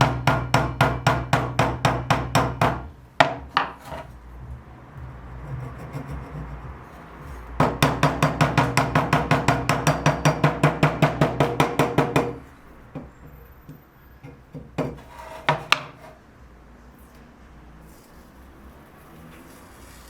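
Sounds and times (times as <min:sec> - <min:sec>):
rapid tapping on wood: 0:07.6 - 0:12.4.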